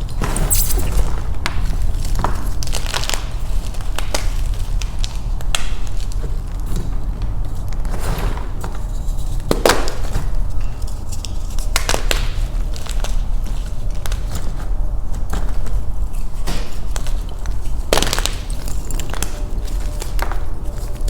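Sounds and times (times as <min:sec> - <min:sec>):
chalk block crunching in hands: 0:00.3 - 0:01.1.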